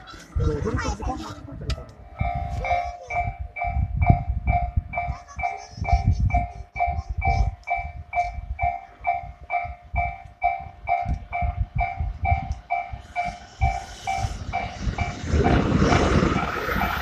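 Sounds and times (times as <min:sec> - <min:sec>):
level-crossing bell ringing: 0:02.1 - 0:15.4.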